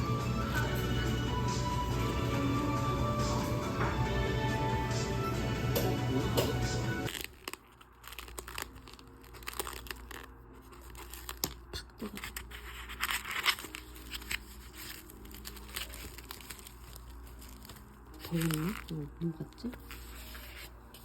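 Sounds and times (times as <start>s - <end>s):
food crackling and rustling: 7.1s - 21.0s.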